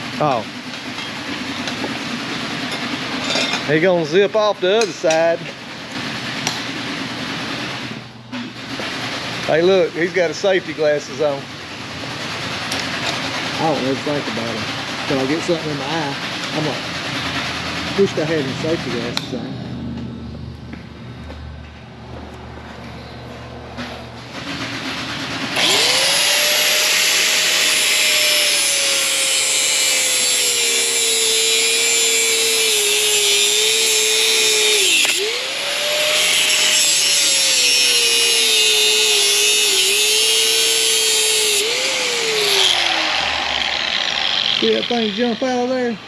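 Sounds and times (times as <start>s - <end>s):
power saw cutting rubber: 24.4s - 45.9s.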